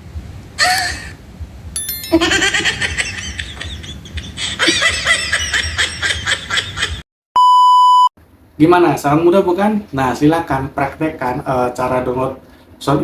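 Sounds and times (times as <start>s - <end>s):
laughter: 2.1s - 7.0s.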